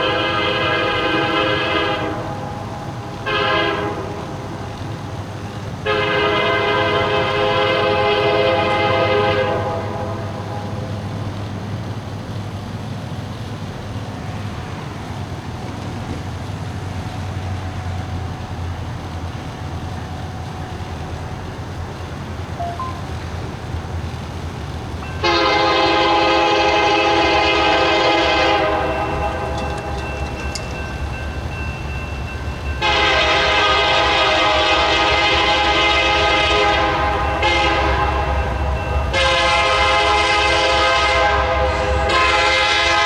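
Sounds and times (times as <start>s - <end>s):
locomotive air horn blasts: 0.0s - 4.7s, 5.8s - 11.0s, 25.0s - 30.0s, 32.8s - 43.0s
train rumbling past: 0.0s - 43.0s.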